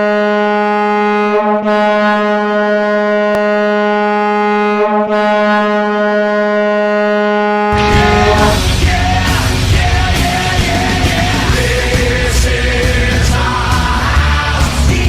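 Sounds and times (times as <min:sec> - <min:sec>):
goal horn blast: 0:00.0 - 0:09.2.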